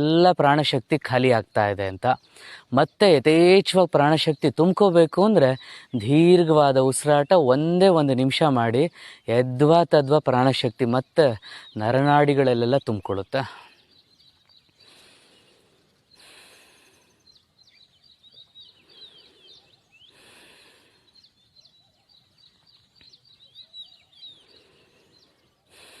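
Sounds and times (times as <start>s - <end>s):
small birds chirping: 0.0s - 26.0s
slow deep breaths: 2.2s - 2.7s, 5.6s - 6.0s, 8.9s - 9.3s, 11.4s - 11.8s, 13.6s - 21.9s, 24.1s - 26.0s.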